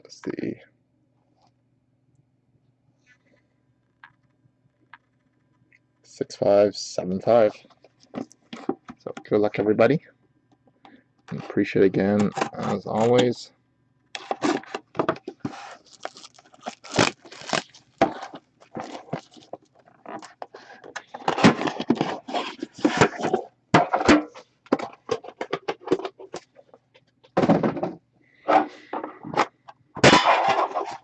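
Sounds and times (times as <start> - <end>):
tearing cardboard and plastic wrapping: 14.2 - 23.4.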